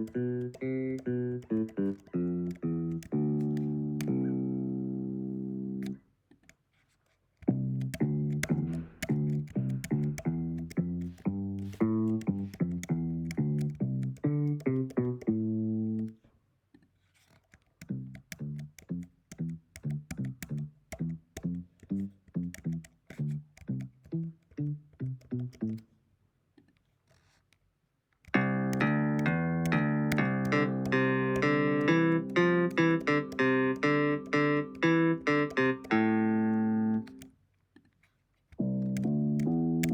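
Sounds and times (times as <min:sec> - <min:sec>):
bass guitar notes: 0:00.0 - 0:06.0, 0:07.5 - 0:16.1, 0:28.4 - 0:37.3, 0:38.6 - 0:39.9.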